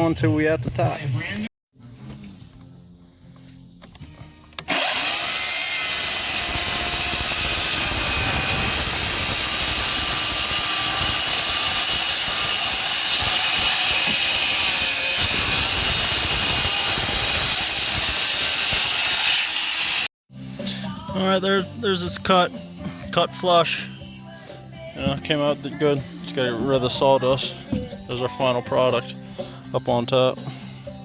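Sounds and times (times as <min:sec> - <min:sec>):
power saw cutting wood boards: 0:04.6 - 0:20.1.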